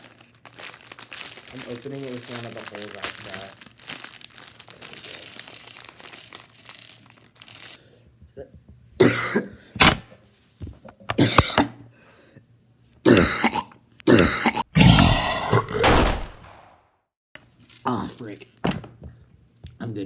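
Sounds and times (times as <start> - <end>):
packaging rustling: 0.0 - 7.8
person coughing: 9.0 - 9.7, 11.1 - 11.8, 13.1 - 15.9.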